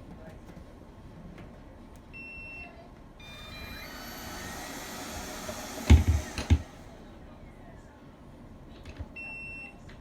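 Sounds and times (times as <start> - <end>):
robot vacuum beeping: 3.2 - 7.0
vacuum motor whirring: 3.2 - 7.2.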